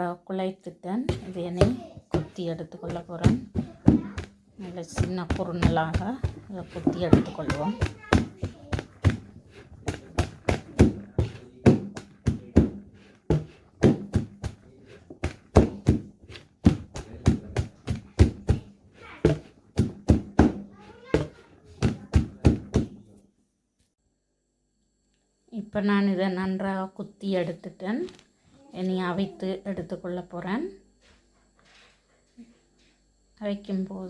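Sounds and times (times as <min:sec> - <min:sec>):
dough pounded in a bowl: 0:01.0 - 0:23.1.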